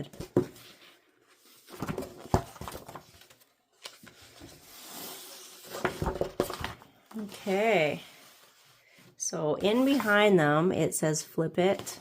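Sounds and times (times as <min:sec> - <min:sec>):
paper rustling and sliding: 0:00.6 - 0:06.8.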